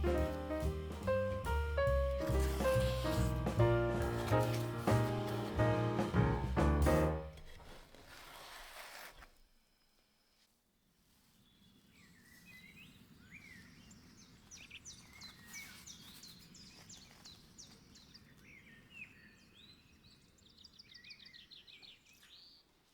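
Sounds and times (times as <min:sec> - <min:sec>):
faint birds chirping: 0:11.1 - 0:22.9.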